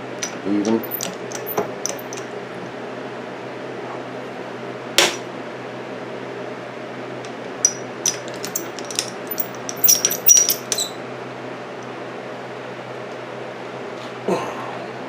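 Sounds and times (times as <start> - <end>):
metal clinks of small tools: 0.1 - 2.2, 7.6 - 11.0.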